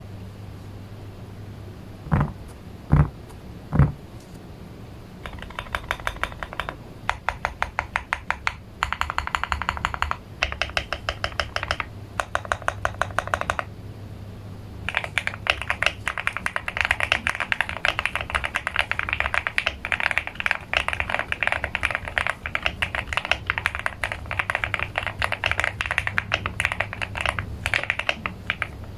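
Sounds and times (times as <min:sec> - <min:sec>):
heavy low thumps: 0:02.1 - 0:04.1
mechanical keyboard typing: 0:05.2 - 0:13.7, 0:14.9 - 0:28.9.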